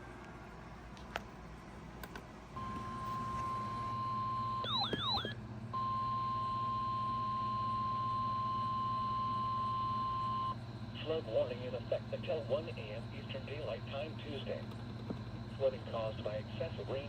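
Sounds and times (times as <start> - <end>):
low radio hum: 0.0 - 17.0
steady high alarm tone: 2.6 - 10.6.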